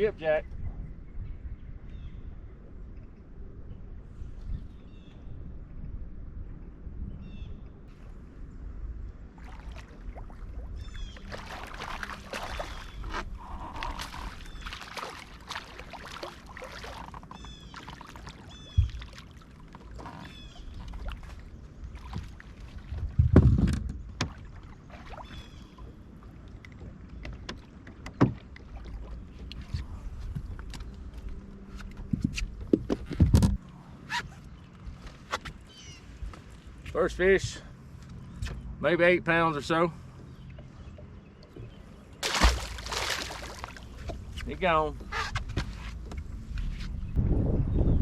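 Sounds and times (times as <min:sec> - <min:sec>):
wind rumbling on microphone: 0:00.0 - 0:26.2, 0:26.8 - 0:36.9, 0:40.8 - 0:48.0
fishing gear rustling and clattering: 0:11.2 - 0:19.0, 0:42.2 - 0:47.0.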